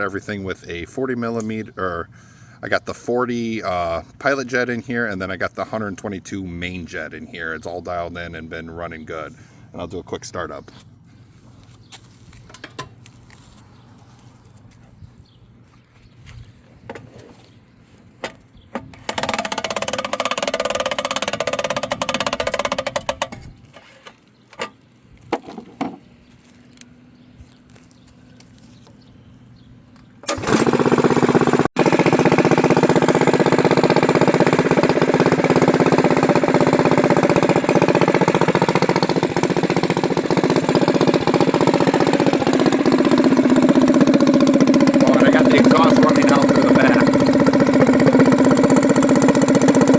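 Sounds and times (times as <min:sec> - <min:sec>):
mini bike engine starting: 0:18.9 - 0:23.5, 0:30.2 - 0:49.9.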